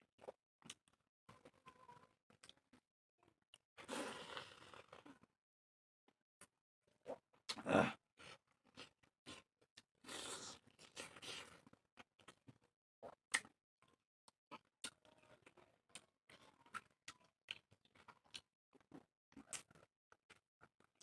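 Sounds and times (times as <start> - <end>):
person chewing: 8.2 - 13.5.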